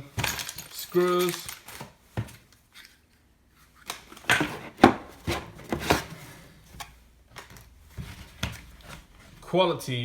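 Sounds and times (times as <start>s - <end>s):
objects knocking and clattering: 0.0s - 2.5s, 3.9s - 6.3s.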